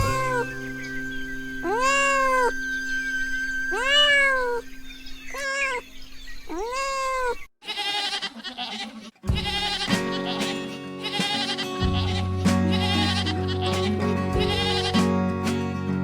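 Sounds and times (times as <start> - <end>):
cat meowing: 1.6 - 2.5, 3.7 - 4.6.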